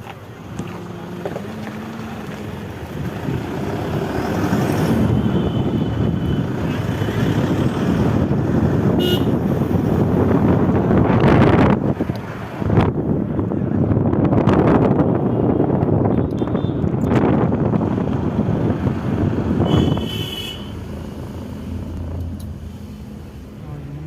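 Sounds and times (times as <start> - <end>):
road and tyre noise: 0.0 - 24.0.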